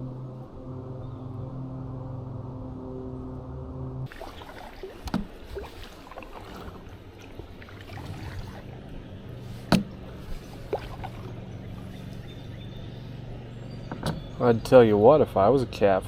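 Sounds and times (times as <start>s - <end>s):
water moving around kayak hull: 4.1s - 13.6s
sharp knocks on kayak: 5.0s - 5.7s, 9.6s - 11.2s.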